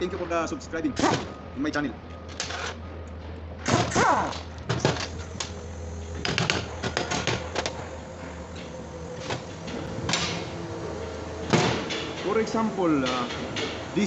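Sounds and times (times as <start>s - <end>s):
low machine hum: 0.0s - 14.0s
metal parts clinking: 2.3s - 2.8s.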